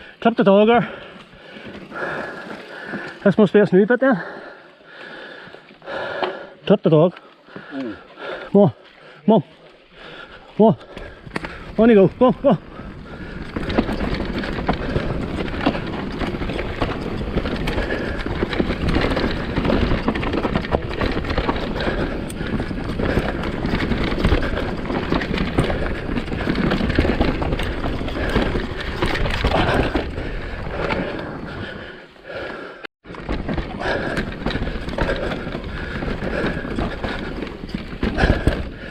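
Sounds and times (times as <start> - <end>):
bike tyres on dirt: 0.0 - 6.5, 7.2 - 38.9
bike clicking and rattling: 0.0 - 38.9.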